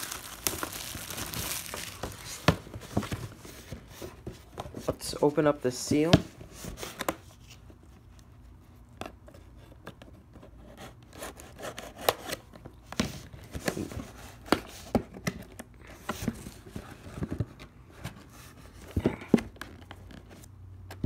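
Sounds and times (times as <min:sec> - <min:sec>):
cardboard box tape tearing: 0:00.0 - 0:02.4.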